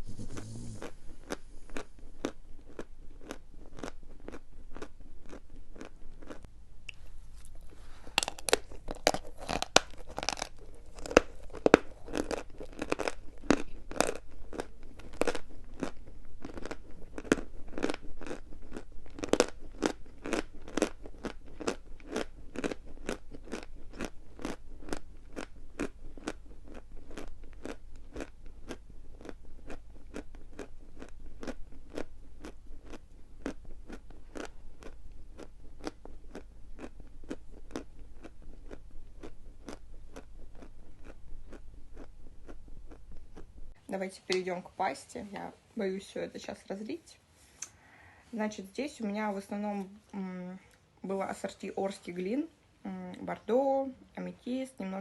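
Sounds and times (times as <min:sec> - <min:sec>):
chalk being chewed crunching: 0:00.0 - 0:43.6.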